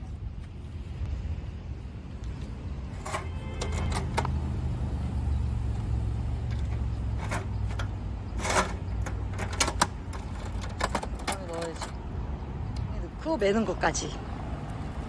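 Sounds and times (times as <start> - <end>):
table parts clicking and knocking: 6.5 - 12.0.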